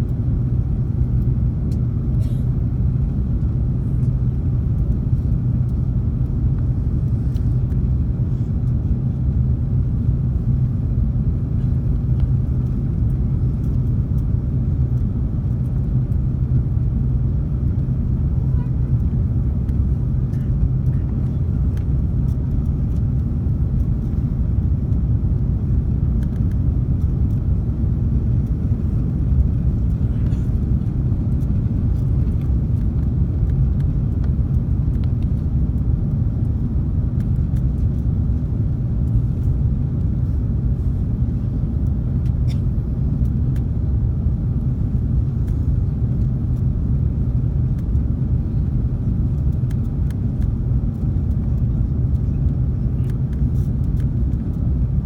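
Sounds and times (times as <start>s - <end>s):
airliner cabin engine rumble: 0.0s - 55.0s.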